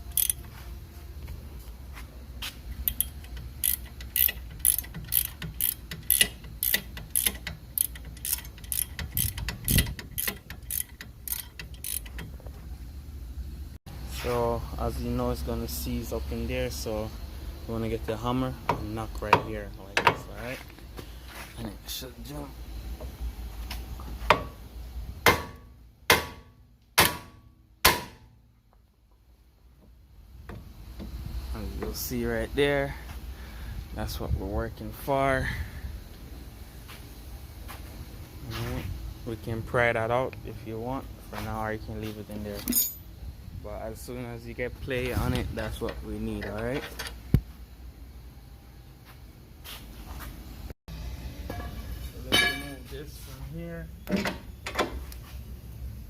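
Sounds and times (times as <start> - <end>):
ratchet wrench clicking: 0.1 - 0.4, 2.8 - 12.6
hammer striking steel: 25.3 - 28.3, 51.5 - 52.8.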